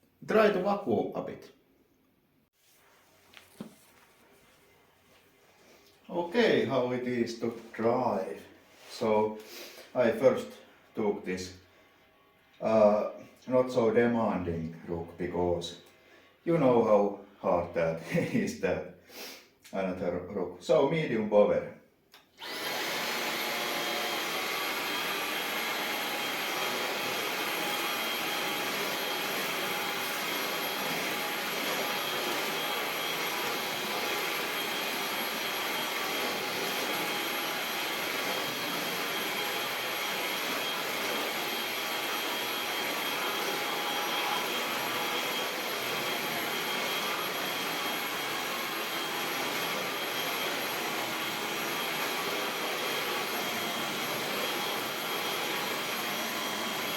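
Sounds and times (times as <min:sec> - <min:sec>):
stick vacuum running on a rug: 0:22.4 - 0:56.9.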